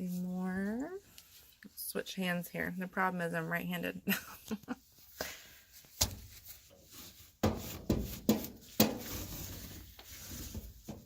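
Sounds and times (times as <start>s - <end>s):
duster scraping in dryer slot: 6.8s - 11.0s.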